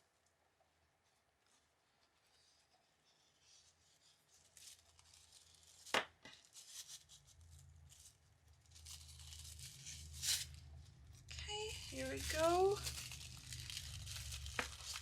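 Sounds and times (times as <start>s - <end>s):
packaging rustling and tearing: 4.3s - 15.0s.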